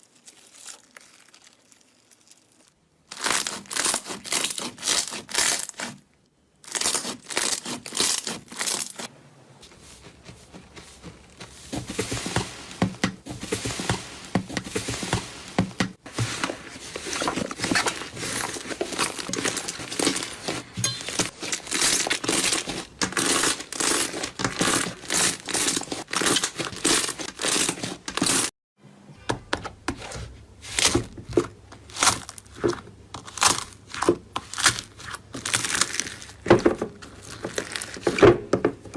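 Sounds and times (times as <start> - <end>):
slime crackling and popping: 0.0 - 5.9, 17.5 - 28.5, 33.2 - 38.2.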